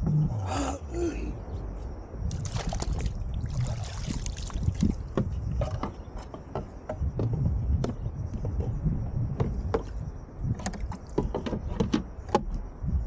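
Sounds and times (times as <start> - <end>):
steady low rumble: 0.0 - 6.2, 6.8 - 11.0, 12.1 - 13.0
water splashing and trickling: 2.3 - 6.4
short knocks and clicks: 5.1 - 8.7, 10.5 - 12.6.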